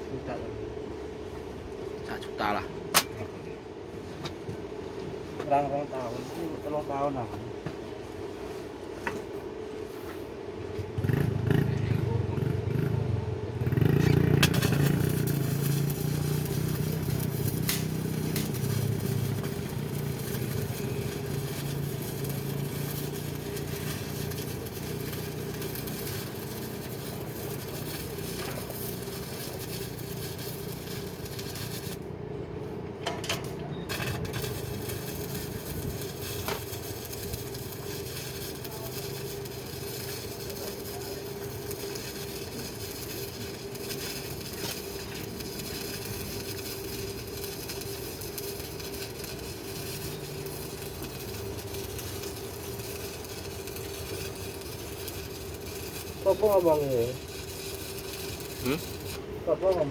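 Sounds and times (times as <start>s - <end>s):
arc welding crackling hiss: 11.0s - 32.2s, 33.9s - 59.9s
low hum: 11.0s - 32.8s.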